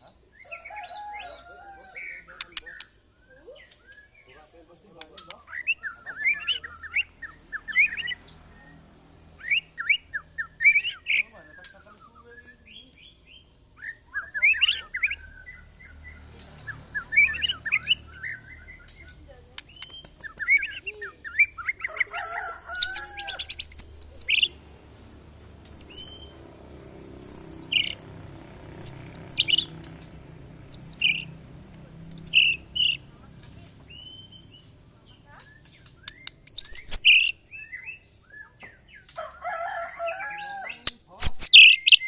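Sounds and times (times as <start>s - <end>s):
bird clicks: 2.4s - 2.9s, 5.0s - 5.4s, 18.8s - 20.8s, 29.0s - 30.2s, 35.4s - 37.0s
bird singing whistled phrases: 9.4s - 16.2s, 16.9s - 19.1s, 25.7s - 26.3s, 27.2s - 28.0s, 30.6s - 31.3s, 32.0s - 33.0s, 35.4s - 38.6s, 41.2s - 42.0s.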